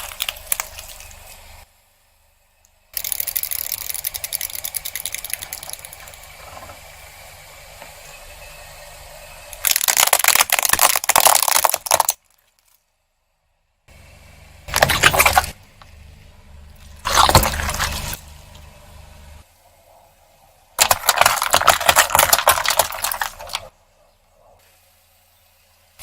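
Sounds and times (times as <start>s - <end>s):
crackling and crunching: 0.0s - 1.6s, 9.6s - 12.9s, 14.7s - 16.0s, 16.7s - 18.6s, 20.8s - 23.7s.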